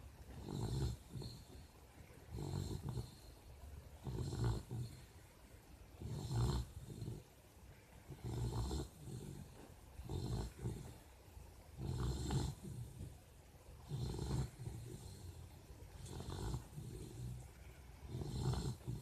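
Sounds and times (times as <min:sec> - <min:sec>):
quiet breathing: 0:00.0 - 0:19.0
loud snoring: 0:00.3 - 0:01.7, 0:02.3 - 0:03.4, 0:04.0 - 0:05.2, 0:06.0 - 0:07.4, 0:08.1 - 0:11.0, 0:11.8 - 0:13.2, 0:13.8 - 0:19.0.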